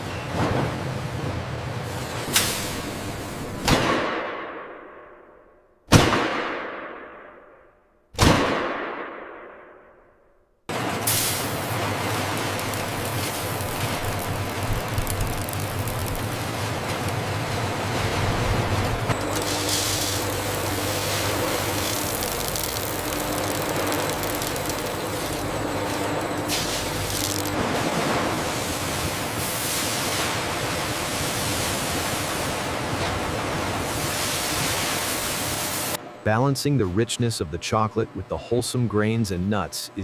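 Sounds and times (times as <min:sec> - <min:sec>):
industrial machinery rumbling hiss: 0:00.9 - 0:03.6, 0:10.7 - 0:37.5
low hum: 0:11.4 - 0:29.4.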